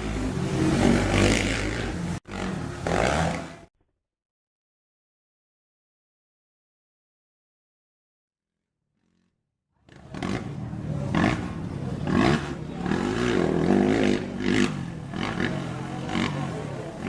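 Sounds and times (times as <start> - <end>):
quad engines revving: 0.0 - 3.7, 9.0 - 17.0.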